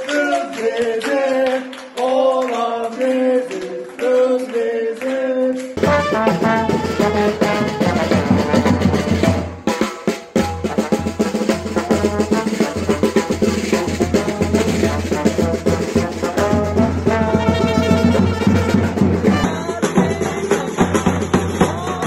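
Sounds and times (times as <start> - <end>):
reedy brass-like melody: 5.8 - 9.8, 10.4 - 19.8
fast drumming: 5.8 - 22.0.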